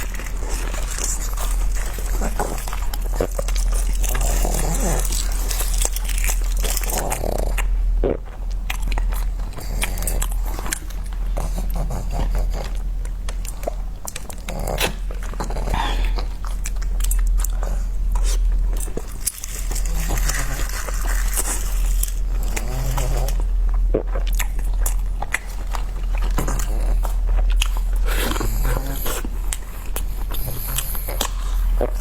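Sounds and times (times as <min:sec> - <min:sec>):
food crunching: 0:00.0 - 0:32.0
low electrical hum: 0:00.0 - 0:32.0
mouth chewing food: 0:00.0 - 0:32.0.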